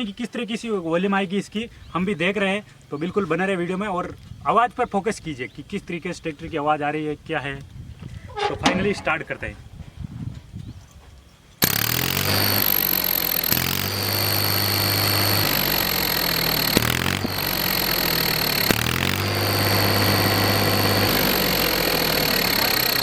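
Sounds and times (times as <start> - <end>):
tractor diesel engine running: 11.7 - 23.0.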